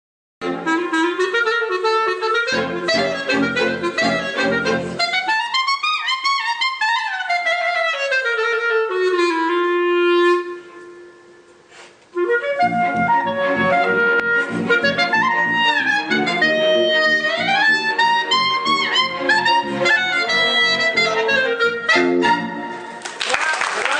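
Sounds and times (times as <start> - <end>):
orchestra accompaniment: 0.4 - 5.2, 12.2 - 23.0
clarinet solo: 0.4 - 23.0.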